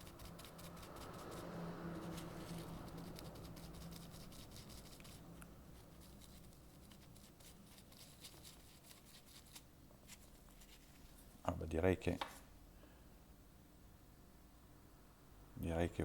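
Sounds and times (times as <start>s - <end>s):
faint scratching and ticks: 0.0s - 11.3s
faint low hum: 0.0s - 16.0s.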